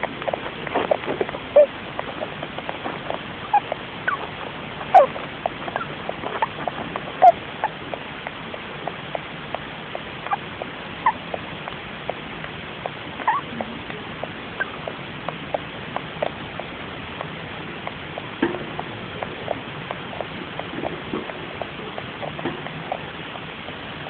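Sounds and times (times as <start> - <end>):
hamster squeak: 0.2 - 11.4, 13.2 - 15.6.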